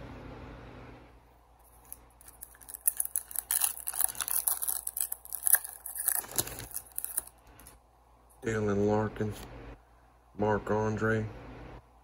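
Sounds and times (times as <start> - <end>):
wrapper crinkling: 1.7 - 7.7
foil card pack tearing: 1.8 - 7.3.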